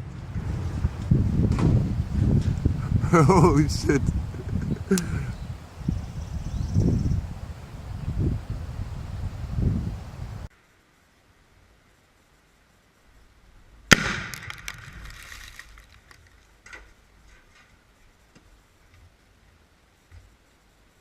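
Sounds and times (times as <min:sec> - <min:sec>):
sharp explosive bang: 0:13.9 - 0:15.2
crackling rattling clicks: 0:14.1 - 0:17.7.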